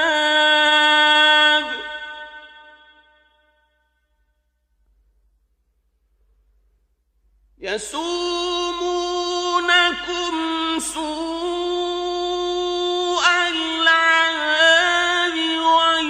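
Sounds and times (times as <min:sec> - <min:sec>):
man chanting a recitation: 0:00.0 - 0:02.4, 0:07.6 - 0:16.0.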